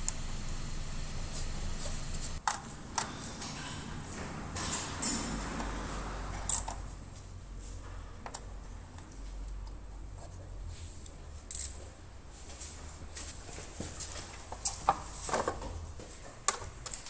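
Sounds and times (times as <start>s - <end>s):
low steady hum: 0.0s - 13.2s.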